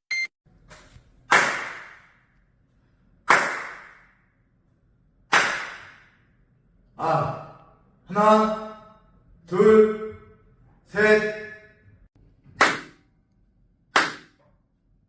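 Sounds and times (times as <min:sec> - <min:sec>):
hand claps with echo: 0:01.3 - 0:02.2, 0:03.3 - 0:04.2, 0:05.3 - 0:06.2, 0:12.6 - 0:13.0, 0:14.0 - 0:14.4
man's voice: 0:07.0 - 0:10.2, 0:10.9 - 0:11.7.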